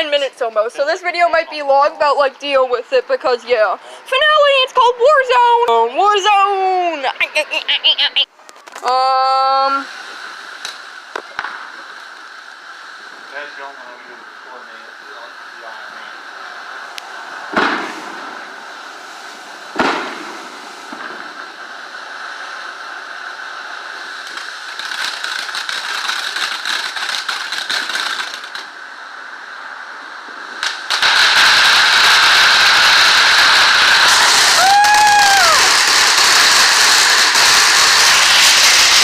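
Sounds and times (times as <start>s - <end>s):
fireworks crackling: 0.0s - 39.0s
firework bangs: 8.6s - 39.0s
firework whistle: 29.5s - 39.0s.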